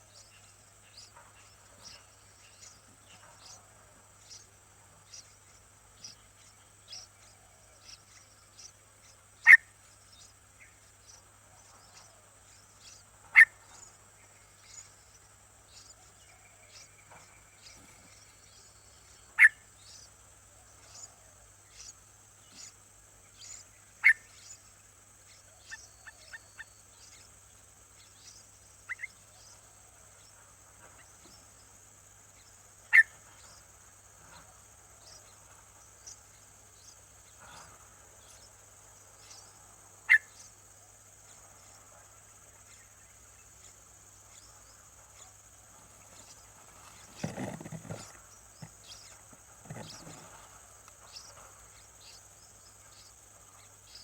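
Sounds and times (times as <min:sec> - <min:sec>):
bird calls: 0:00.0 - 0:27.3, 0:28.0 - 0:31.6, 0:43.6 - 0:54.0
insect chorus: 0:00.0 - 0:54.0.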